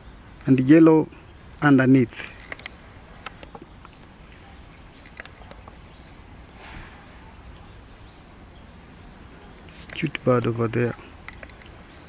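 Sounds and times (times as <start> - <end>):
faint outdoor background: 0.0 - 12.0
light clicks: 2.2 - 4.2, 5.0 - 5.8, 11.2 - 11.8
small bird chirping: 2.2 - 12.0.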